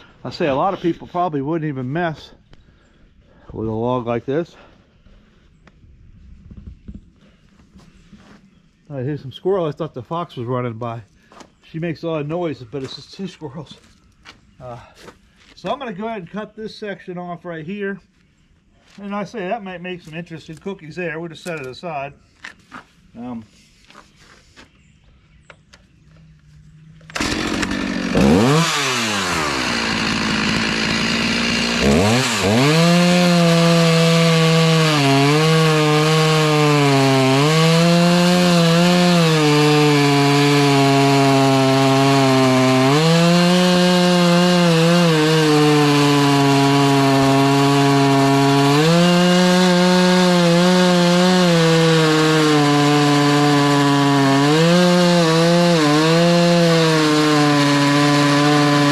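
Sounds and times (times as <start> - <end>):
chainsaw cutting a log: 27.0 - 58.9.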